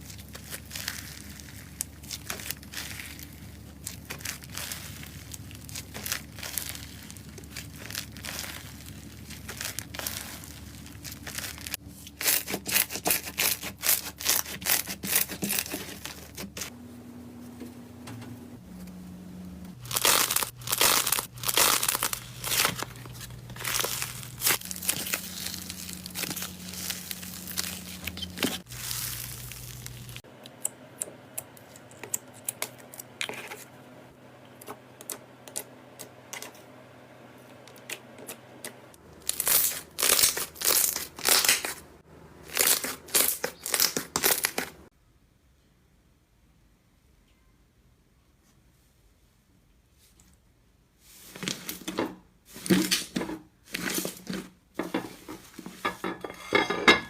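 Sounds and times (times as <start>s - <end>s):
slime squishing: 0.0s - 16.7s, 19.8s - 30.7s, 37.8s - 44.9s.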